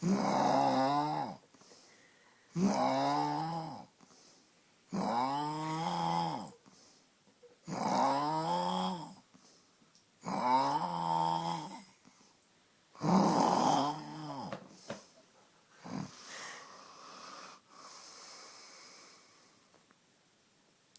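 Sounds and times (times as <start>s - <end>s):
person snoring: 0.0s - 1.4s, 2.5s - 3.9s, 4.9s - 6.6s, 7.6s - 9.2s, 10.2s - 11.9s, 13.0s - 14.6s, 15.8s - 19.4s.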